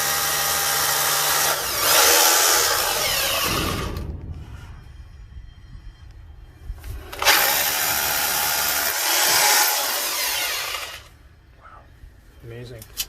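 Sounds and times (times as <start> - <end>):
rotary hammer drilling into brick: 0.0 - 4.0, 7.2 - 11.1.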